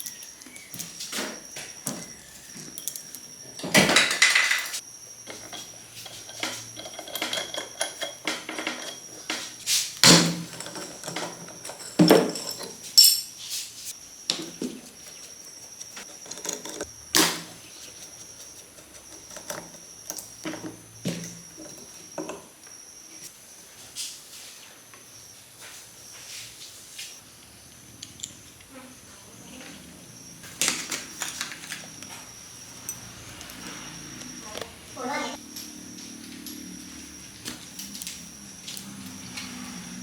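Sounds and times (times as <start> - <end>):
metal tools clinking and knocking: 1.8 - 13.4.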